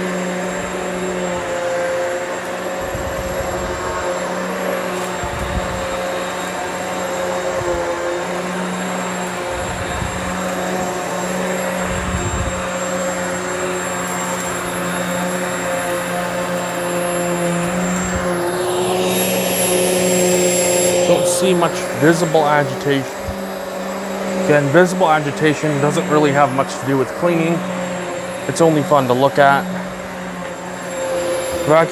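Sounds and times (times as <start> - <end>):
vacuum cleaner running: 0.0 - 31.9.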